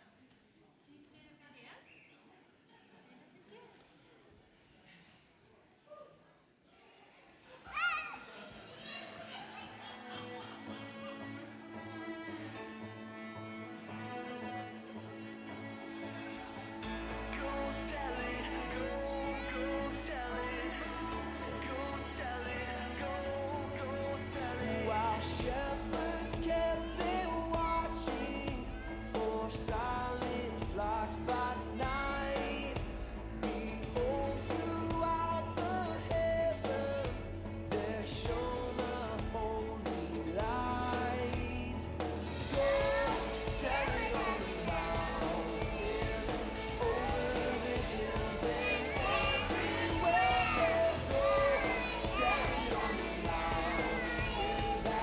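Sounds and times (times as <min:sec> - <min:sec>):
instrumental backing music: 0:24.4 - 0:55.0
young children singing: 0:42.5 - 0:55.0.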